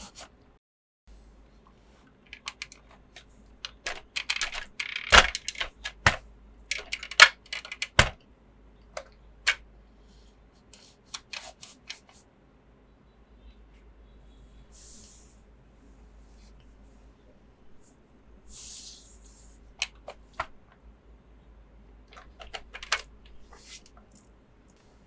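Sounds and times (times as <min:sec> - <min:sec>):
plastic toy parts clicking: 0:02.3 - 0:02.9, 0:03.6 - 0:08.2, 0:09.0 - 0:09.6, 0:19.8 - 0:20.6, 0:22.1 - 0:24.3.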